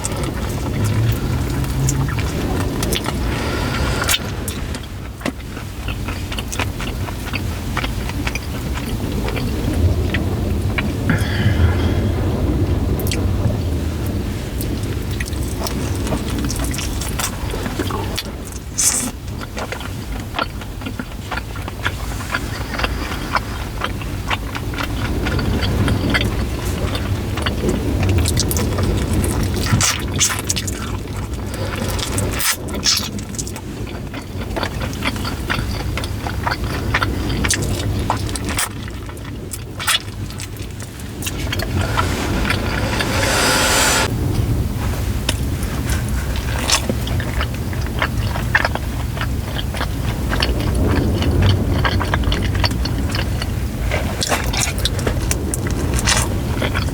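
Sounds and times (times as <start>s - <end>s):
low car hum: 0.0s - 7.3s, 8.4s - 16.4s, 39.7s - 44.9s
steady low rumble: 0.0s - 7.4s, 8.3s - 16.6s, 39.8s - 44.9s
close-up chewing noises: 0.0s - 44.1s, 45.4s - 56.9s
short hiss: 41.3s - 44.1s.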